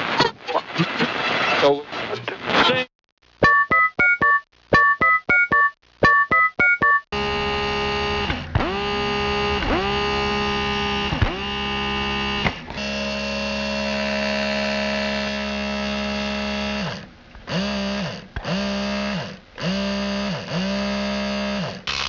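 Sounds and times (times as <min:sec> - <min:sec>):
touch-tone keypad beeps: 0:03.4 - 0:07.1
dentist's drill whining: 0:07.2 - 0:22.0.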